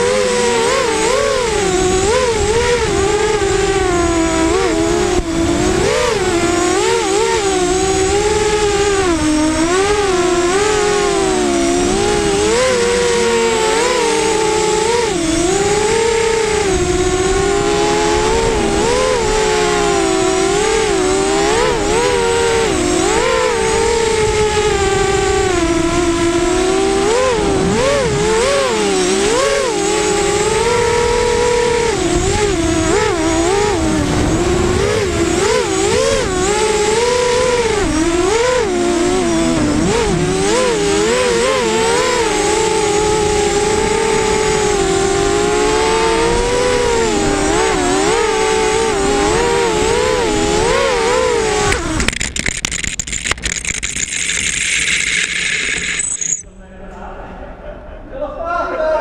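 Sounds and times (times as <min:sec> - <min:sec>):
drone motors whining: 0:00.0 - 0:56.5
scattered clicks: 0:51.7 - 0:56.5.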